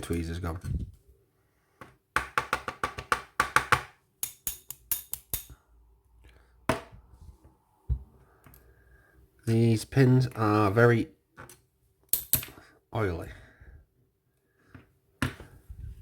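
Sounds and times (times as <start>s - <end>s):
tools clicking on hard surface: 4.2s - 5.6s.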